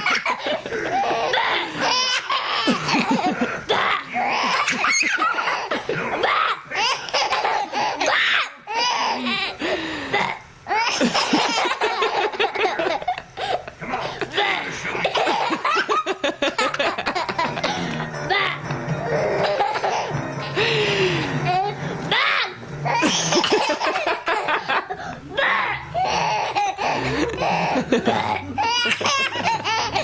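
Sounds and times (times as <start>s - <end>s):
baby laughing: 0.0s - 9.6s, 10.7s - 20.2s, 21.4s - 30.0s
fake burps: 10.1s - 10.5s.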